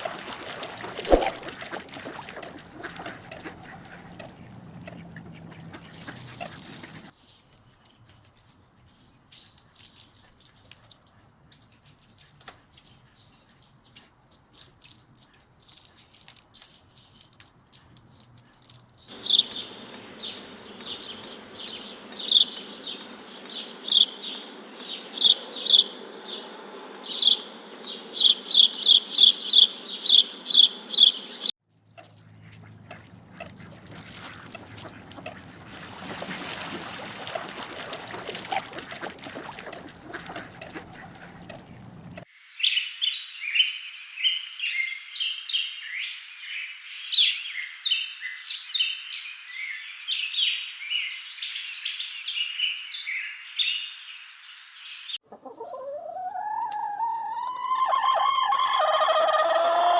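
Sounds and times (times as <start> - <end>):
small birds chirping together: 15.2 - 31.6, 37.6 - 55.3
bird chirping rapidly: 19.1 - 31.5
rooster crowing: 57.5 - 59.9.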